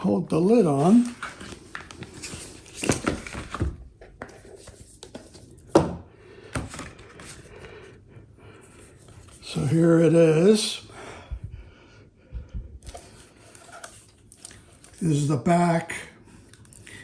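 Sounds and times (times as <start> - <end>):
cardboard rustling and scraping: 0.6 - 5.6.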